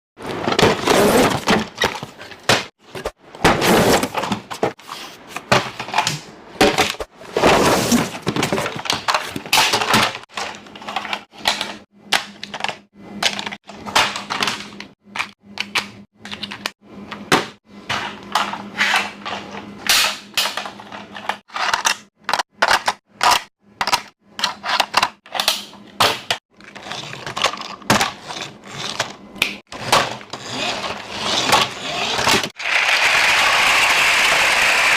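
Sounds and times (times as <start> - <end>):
hard plastic toys clattering: 26.6 - 29.2.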